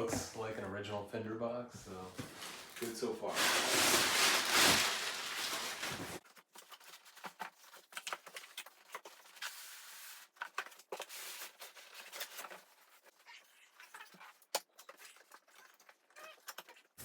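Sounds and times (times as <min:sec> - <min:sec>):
cardboard box scraping rustle: 0:01.9 - 0:06.2
packaging crinkles and taps: 0:02.2 - 0:09.4.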